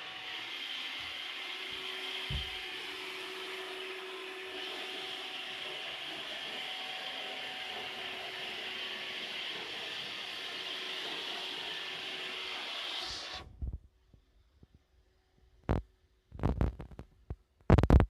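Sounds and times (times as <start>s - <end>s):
robot vacuum whirring: 0.0s - 13.4s.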